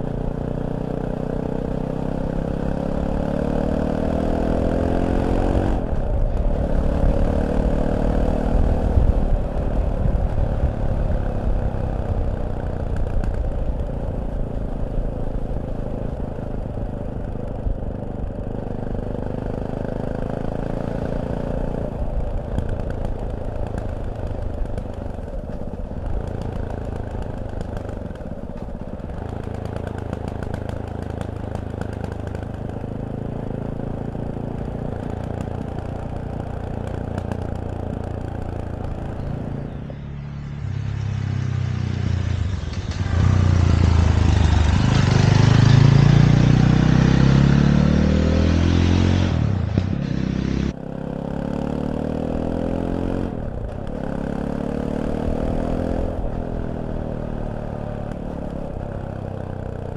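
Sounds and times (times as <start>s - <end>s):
motorcycle engine revving: 0.0s - 59.9s
rush of wind: 4.2s - 15.4s.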